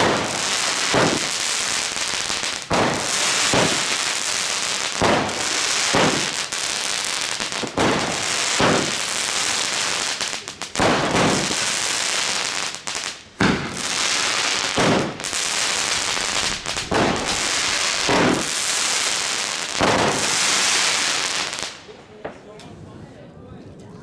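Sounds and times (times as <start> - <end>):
hiss of burning fireworks: 0.0 - 22.0
firework shots firing: 0.0 - 22.4.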